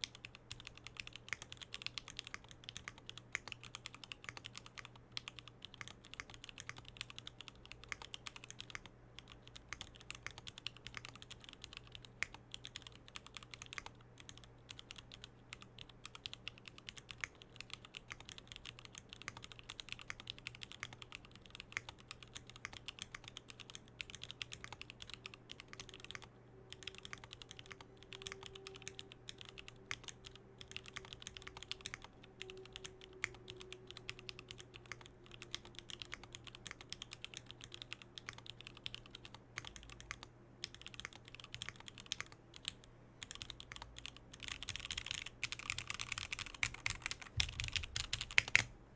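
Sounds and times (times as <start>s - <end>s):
mechanical keyboard key clacks: 44.4s - 48.7s.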